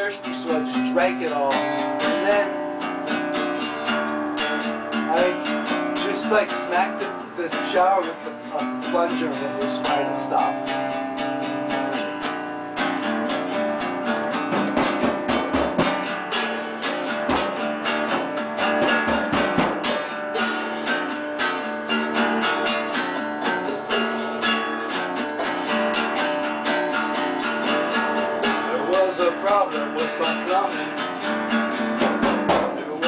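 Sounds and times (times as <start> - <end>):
strummed acoustic guitar: 0.0 - 33.0
drums: 11.4 - 33.0.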